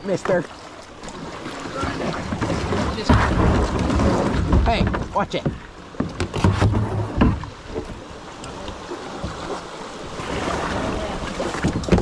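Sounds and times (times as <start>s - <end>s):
knocks on kayak: 1.9s - 8.0s, 11.5s - 12.0s.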